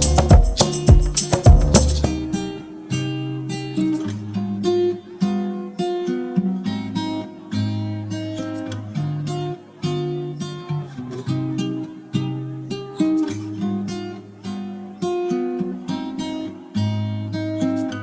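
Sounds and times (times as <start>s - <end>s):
bass notes: 0.0s - 2.4s
acoustic guitar melody: 0.0s - 18.0s.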